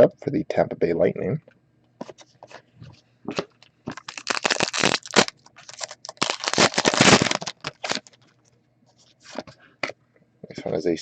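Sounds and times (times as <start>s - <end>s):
foil wrapper crinkling: 3.3s - 8.6s.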